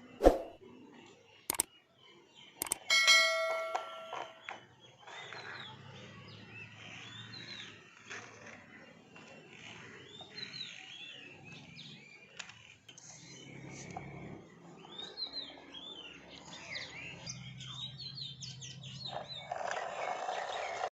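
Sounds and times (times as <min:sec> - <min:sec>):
small birds chirping: 0:00.0 - 0:20.9.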